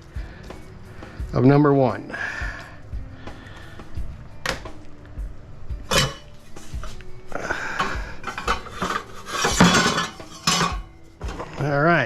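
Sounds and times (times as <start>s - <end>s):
copper pipe pieces clanking: 5.9s - 7.0s, 7.8s - 11.7s.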